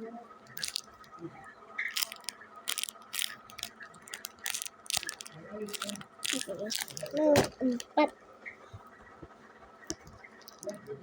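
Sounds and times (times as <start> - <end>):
plastic packaging crinkling: 0.5 - 1.0, 1.9 - 8.0, 10.4 - 10.8.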